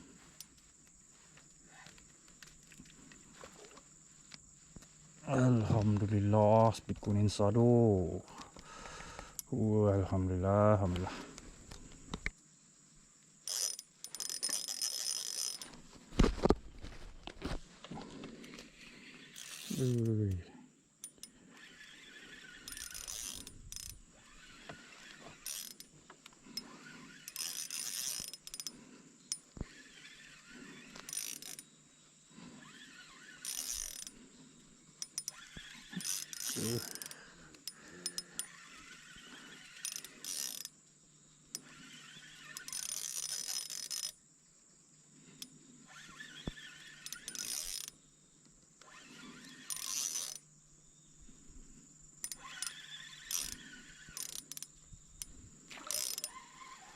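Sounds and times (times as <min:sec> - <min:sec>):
fishing reel whirring and clicking: 0:13.4 - 0:15.8, 0:18.4 - 0:20.4, 0:21.0 - 0:31.7, 0:32.4 - 0:34.2, 0:35.0 - 0:40.8, 0:41.5 - 0:44.2, 0:45.4 - 0:48.0, 0:48.8 - 0:50.5, 0:52.2 - 0:56.9.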